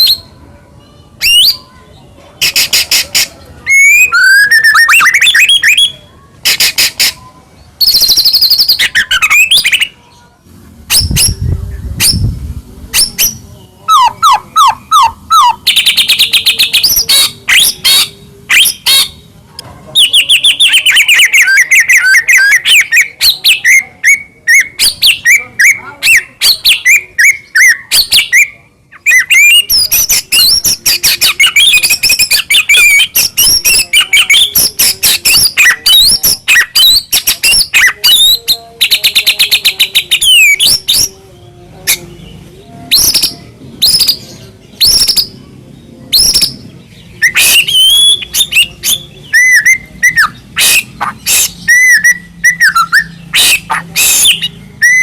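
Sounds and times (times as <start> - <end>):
songbird singing whistled trills: 0.0 - 10.0, 20.0 - 41.2, 41.8 - 45.4, 46.1 - 55.0.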